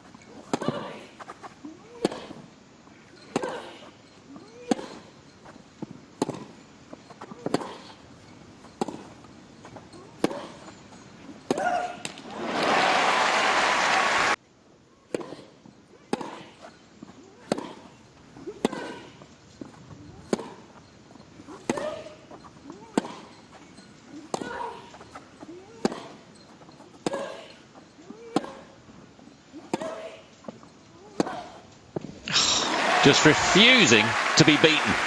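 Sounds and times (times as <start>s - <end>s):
crowd applause and cheering: 12.2s - 14.4s, 32.3s - 35.0s
racquet striking tennis ball: 16.1s - 16.5s.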